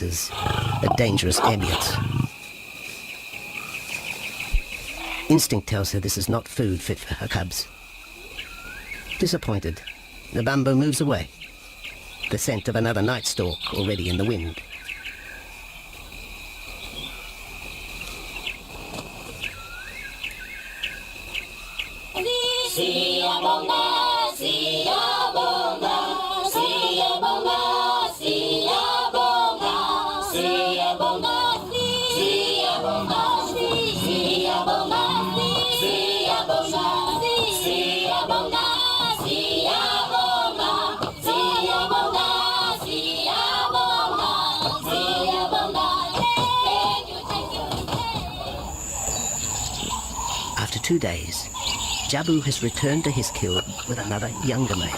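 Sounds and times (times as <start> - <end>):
insects chirping faintly: 0.0 - 54.9
choir singing: 22.2 - 49.6.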